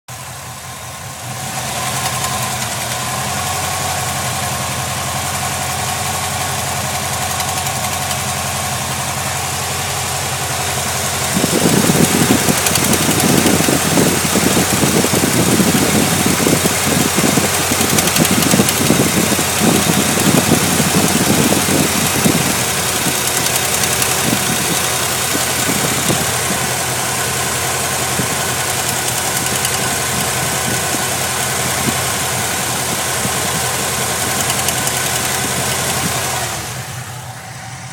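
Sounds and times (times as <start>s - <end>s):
engine idling: 0.1s - 37.9s
valve lifter ticking: 28.6s - 30.4s, 34.3s - 35.9s.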